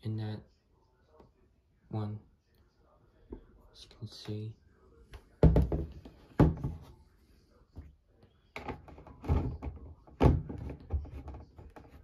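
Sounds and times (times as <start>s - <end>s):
knocks and thuds at washing machine: 5.4s - 6.9s, 8.6s - 11.9s.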